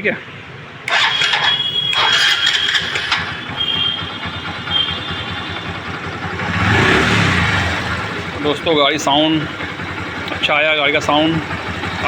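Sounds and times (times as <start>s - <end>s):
motorcycle engine running: 0.9s - 12.0s.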